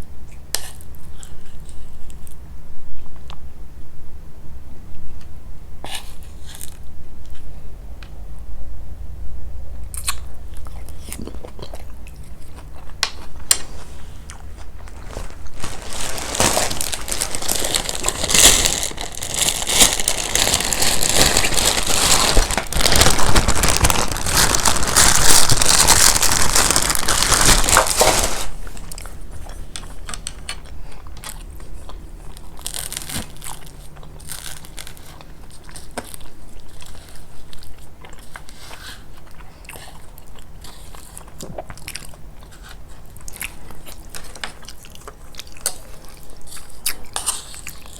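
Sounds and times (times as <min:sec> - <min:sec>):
crunchy chewing: 0:09.9 - 0:47.9.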